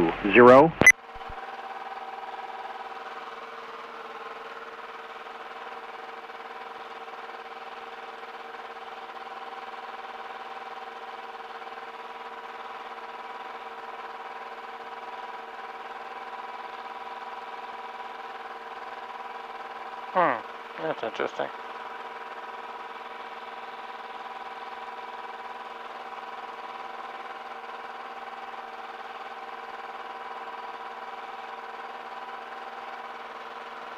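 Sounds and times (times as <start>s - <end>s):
steady hum tones: 0.0s - 1.3s.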